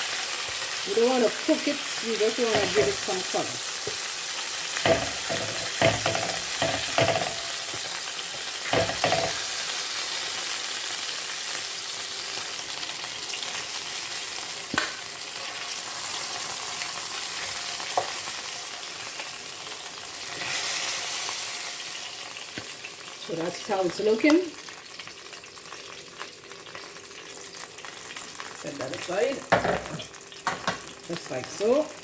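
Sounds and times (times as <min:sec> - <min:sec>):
chicken sizzling in hot oil: 0:00.0 - 0:32.0
utensil knocking against pan: 0:02.5 - 0:03.2, 0:04.8 - 0:08.0, 0:08.7 - 0:09.4.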